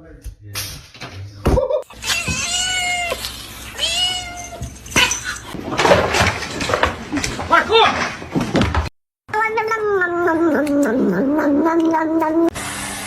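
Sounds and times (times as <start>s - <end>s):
cat meowing: 2.0s - 3.2s, 3.8s - 5.2s, 9.3s - 12.5s
rustling and knocking: 4.6s - 8.9s.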